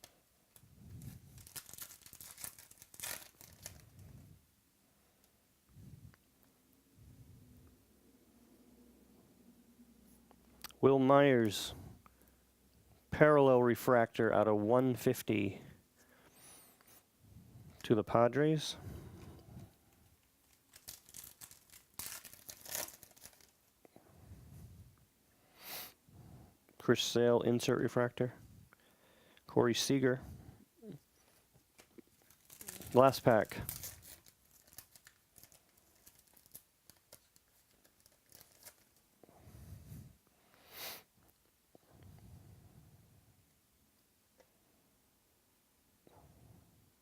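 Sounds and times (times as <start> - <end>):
card packs and wrappers crinkling: 0.0 - 4.2, 20.3 - 23.7, 31.7 - 39.1.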